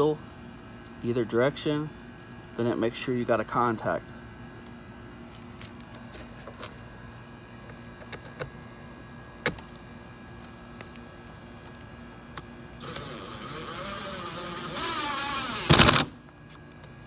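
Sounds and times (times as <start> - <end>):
drill click: 12.3 - 16.2
cordless drill driving screw: 12.4 - 16.2.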